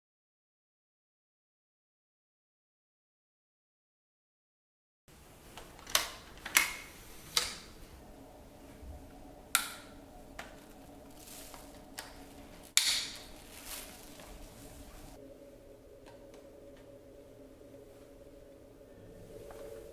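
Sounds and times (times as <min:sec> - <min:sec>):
plastic vacuum parts clicking: 0:12.8 - 0:13.2.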